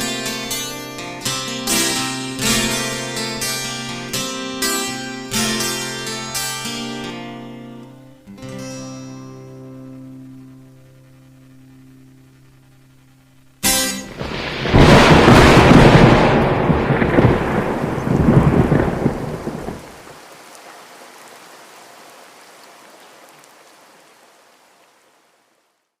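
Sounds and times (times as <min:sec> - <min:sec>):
faint hiss: 0:00.0 - 0:26.0
thunderclap with rolling rumble: 0:14.1 - 0:20.1.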